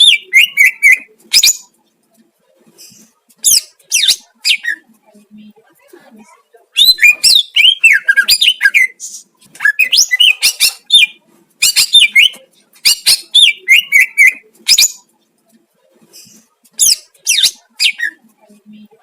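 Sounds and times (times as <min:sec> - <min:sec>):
bird whistling and chirping: 0:00.0 - 0:01.6, 0:06.8 - 0:15.0.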